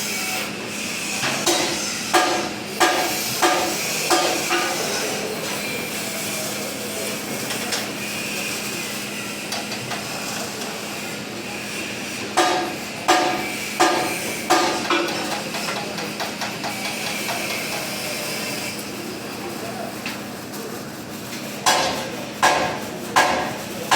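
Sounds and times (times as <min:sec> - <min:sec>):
hammer striking steel: 0:01.4 - 0:04.8, 0:12.4 - 0:17.4, 0:21.6 - 0:23.9.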